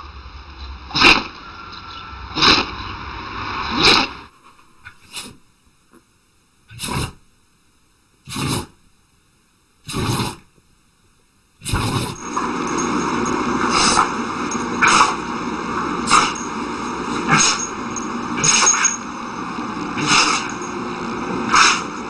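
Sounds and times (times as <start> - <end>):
steady background noise: 0.0 - 22.0
dog sneezing: 4.8 - 5.4, 6.7 - 7.2, 8.3 - 8.8, 9.8 - 10.5, 11.6 - 12.2, 16.1 - 16.4, 17.3 - 17.7, 18.4 - 18.9, 20.0 - 20.5, 21.5 - 22.0.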